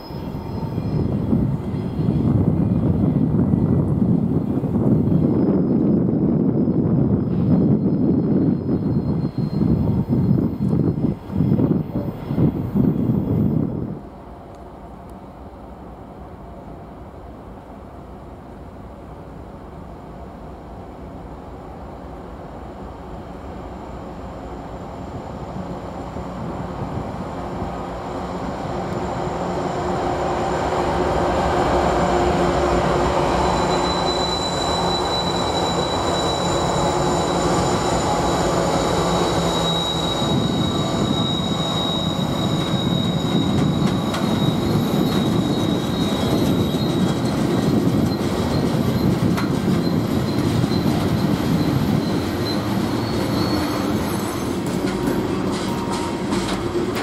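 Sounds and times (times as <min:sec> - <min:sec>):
rumble of rolling train cars: 0:00.0 - 0:57.0
wheel flange squeal: 0:07.3 - 0:11.7, 0:33.0 - 0:56.6.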